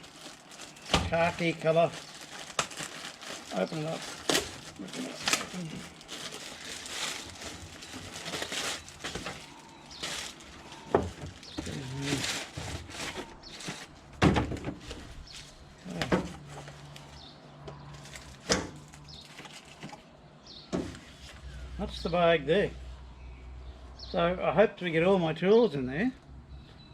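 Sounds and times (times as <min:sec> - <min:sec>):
fabric bag rustling and scraping: 0:00.0 - 0:14.1.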